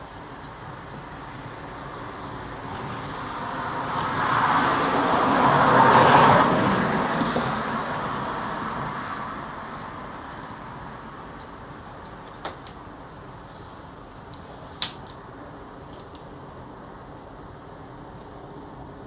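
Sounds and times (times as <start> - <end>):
car passing by: 2.2 - 11.2.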